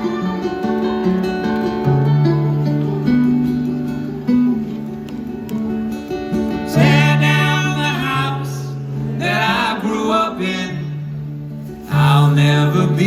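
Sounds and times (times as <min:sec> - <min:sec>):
strummed acoustic guitar: 0:00.0 - 0:13.0
wordless singing: 0:06.4 - 0:13.0.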